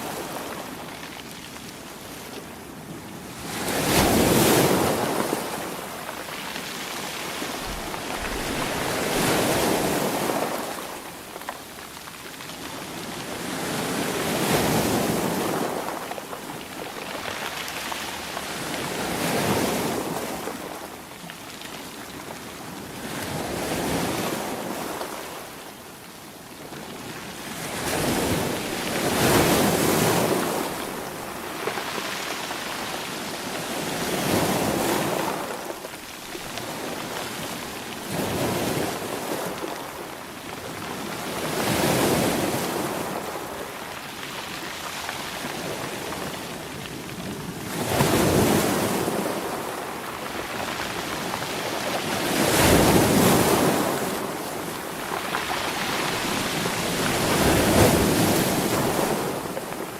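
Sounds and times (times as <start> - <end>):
ocean waves breaking on shore: 0.0 - 11.6, 26.8 - 59.9.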